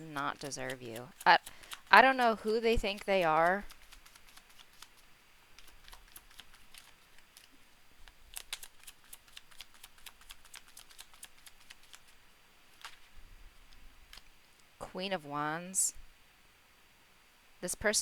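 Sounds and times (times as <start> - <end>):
cards being shuffled: 0.0 - 14.3.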